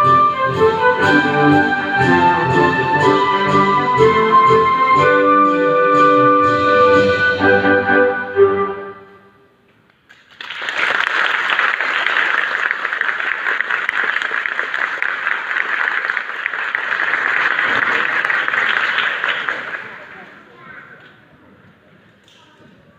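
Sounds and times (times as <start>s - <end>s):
audience applause: 10.2s - 20.5s.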